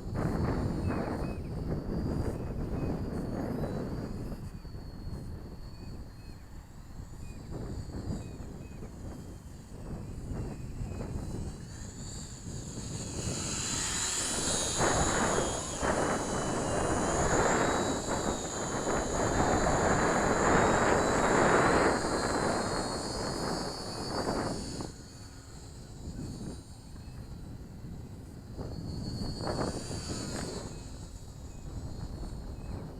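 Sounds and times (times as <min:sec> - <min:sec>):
small electric motors whining: 0:00.0 - 0:32.9
rushing noise: 0:11.4 - 0:25.1.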